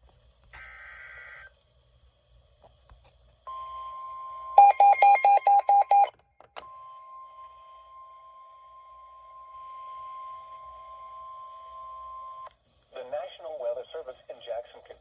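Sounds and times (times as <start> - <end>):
rapid beeping: 4.6 - 6.1
steady warning alarm tone: 4.6 - 6.1.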